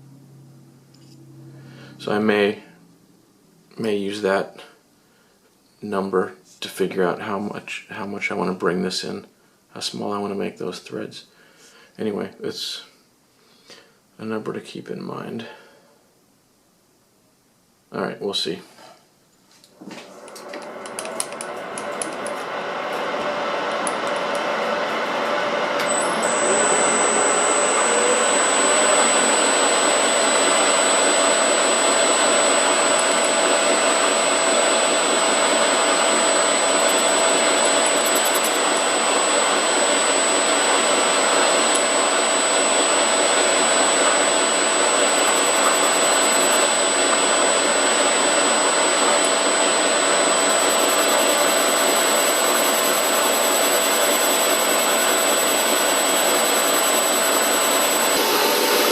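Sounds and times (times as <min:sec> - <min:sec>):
metal lathe whine: 0:20.1 - 0:58.9.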